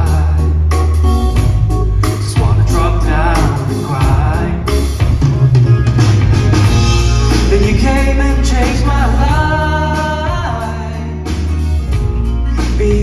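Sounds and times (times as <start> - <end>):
man singing: 0.0 - 1.0, 2.1 - 5.2, 7.3 - 13.0
band with heavy bass: 0.0 - 13.0.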